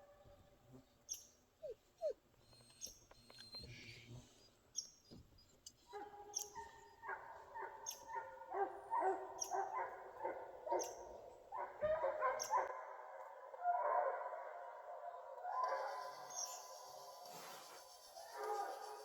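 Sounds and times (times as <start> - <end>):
hounds baying and barking: 5.4 - 17.3, 18.2 - 19.0.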